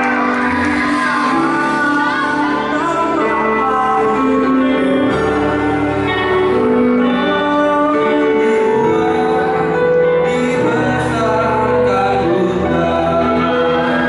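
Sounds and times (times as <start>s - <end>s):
group singing: 0.0s - 6.5s, 10.7s - 14.0s
instrumental accompaniment: 0.0s - 14.0s.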